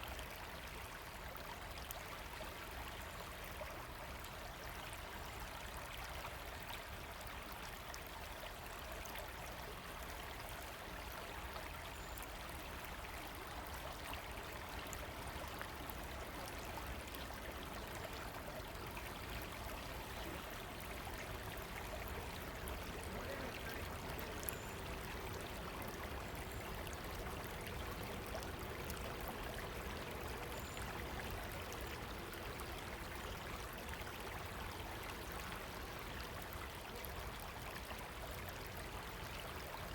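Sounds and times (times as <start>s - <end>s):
river water rushing: 13.0s - 34.6s.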